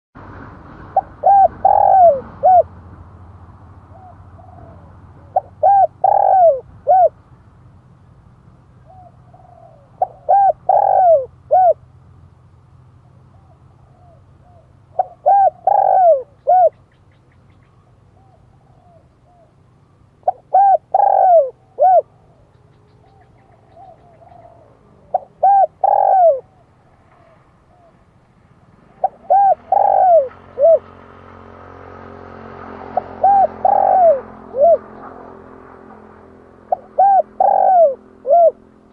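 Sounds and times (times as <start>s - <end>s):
dove cooing: 0.9s - 2.8s, 3.9s - 7.2s, 8.8s - 11.8s, 13.1s - 16.9s, 18.0s - 28.1s, 28.9s - 31.0s, 32.8s - 38.9s.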